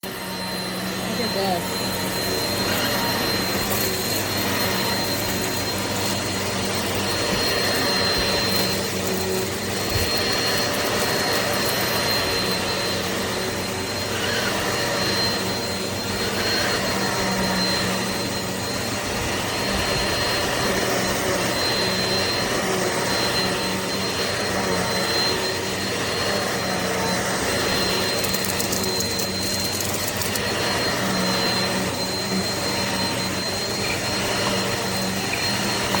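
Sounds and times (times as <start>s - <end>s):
vacuum cleaner running: 0.0s - 36.0s.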